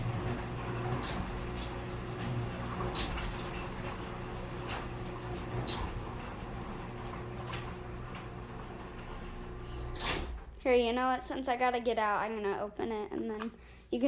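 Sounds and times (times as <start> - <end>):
garage door motor hum: 0.0 - 10.6.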